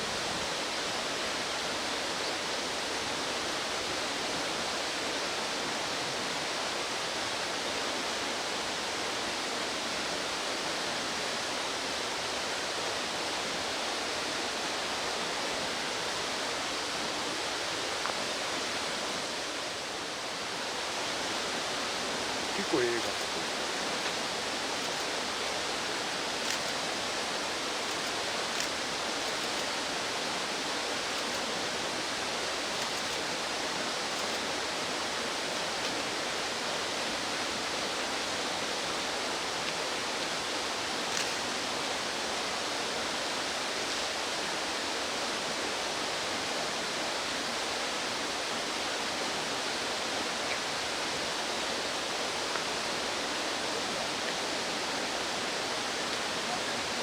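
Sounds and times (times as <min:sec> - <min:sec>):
mountain stream rushing: 0:00.0 - 0:57.0
faint high ticks: 0:26.4 - 0:26.8, 0:27.8 - 0:29.8.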